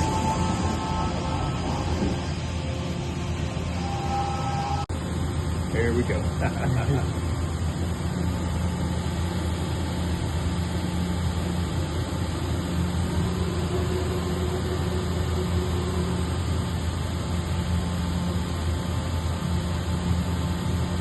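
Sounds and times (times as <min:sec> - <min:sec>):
faint higher tone: 0:00.0 - 0:04.9
lathe machine hum and hiss: 0:00.0 - 0:21.0.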